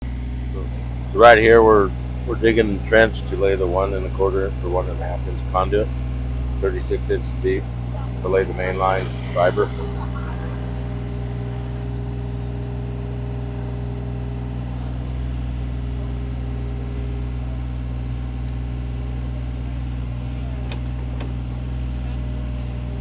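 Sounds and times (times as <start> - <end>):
diesel engine droning: 0.5 - 15.0.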